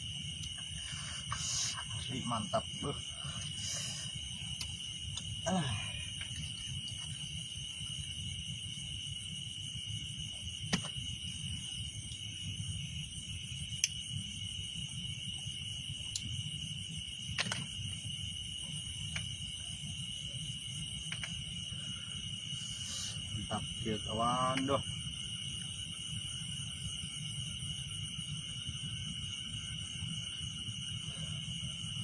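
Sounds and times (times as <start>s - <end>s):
crickets trilling: 0.0s - 32.0s
sharp clicks: 21.1s - 21.4s.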